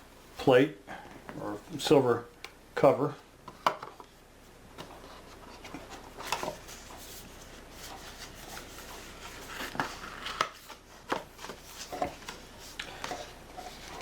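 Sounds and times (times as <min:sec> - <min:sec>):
packaging rustling and scraping: 0:04.8 - 0:14.0.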